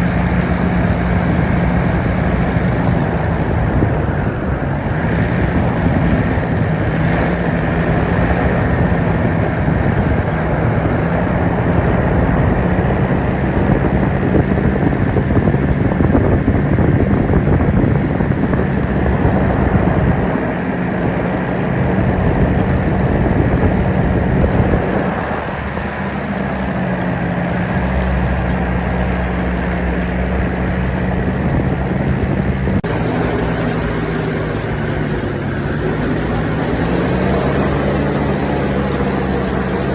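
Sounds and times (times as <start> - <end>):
paramotor engine running: 0.0 - 39.9
wind noise on microphone: 0.0 - 39.9.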